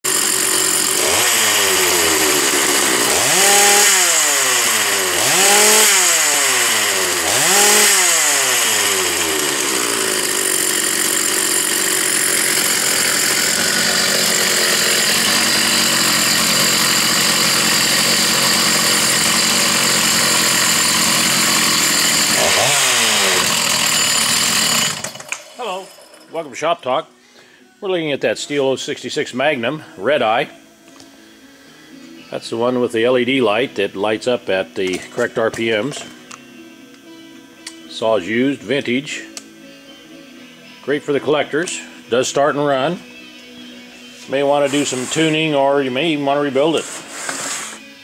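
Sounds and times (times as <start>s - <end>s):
chainsaw engine revving: 0.1s - 25.9s, 44.4s - 47.8s.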